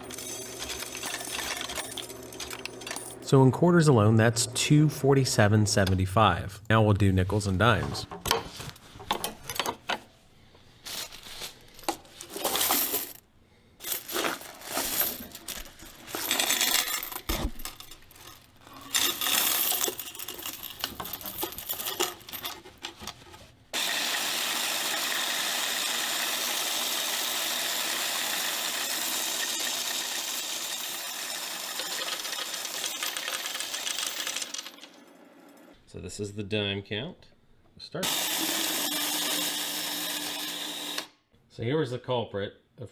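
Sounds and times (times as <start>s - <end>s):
coin counting machine running: 0.0s - 3.3s, 12.5s - 13.2s, 16.2s - 17.9s, 18.7s - 22.4s, 23.8s - 35.8s, 38.0s - 41.1s
coins clattering into machine: 0.0s - 3.3s, 11.7s - 13.2s, 13.8s - 22.6s, 24.8s - 35.7s
coins rattling through machine: 0.0s - 3.3s, 11.6s - 13.2s, 13.8s - 22.6s, 23.8s - 35.7s, 38.1s - 41.0s.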